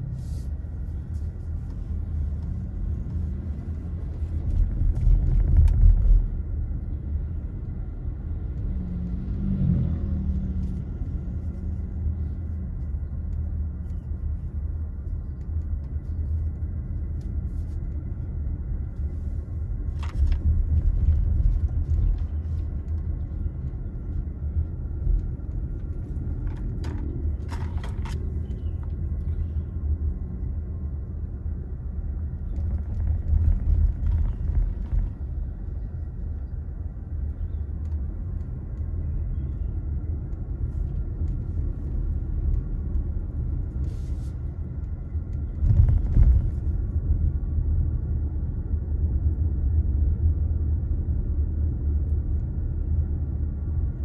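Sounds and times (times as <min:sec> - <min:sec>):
car engine and tyres rumbling: 0:00.0 - 0:54.0.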